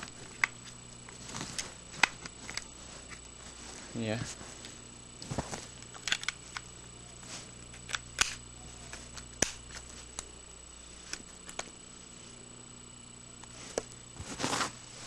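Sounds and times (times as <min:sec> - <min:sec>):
plastic clicks of camcorder handling: 0:06.0 - 0:06.7.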